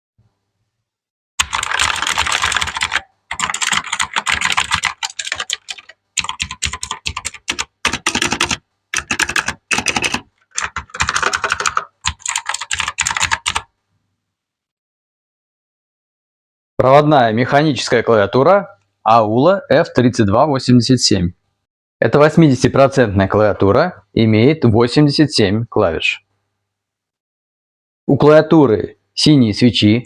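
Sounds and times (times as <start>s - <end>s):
clicky mechanical keyboard typing: 1.4s - 13.7s.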